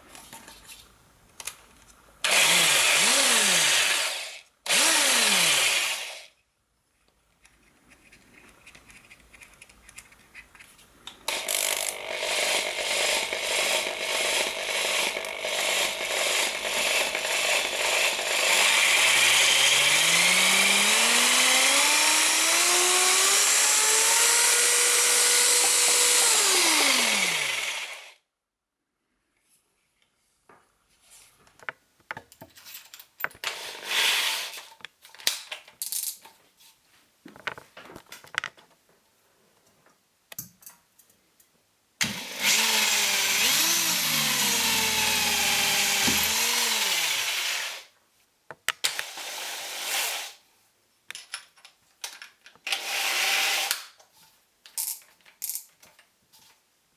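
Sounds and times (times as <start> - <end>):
hammer drill motor whining: 2.2 - 6.3, 11.3 - 28.2, 42.0 - 47.9.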